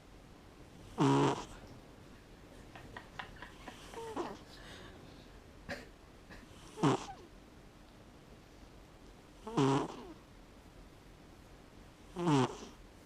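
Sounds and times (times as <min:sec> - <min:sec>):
cat snoring: 0:00.8 - 0:01.6, 0:03.8 - 0:04.4, 0:06.5 - 0:07.3, 0:09.4 - 0:10.2, 0:12.1 - 0:12.8.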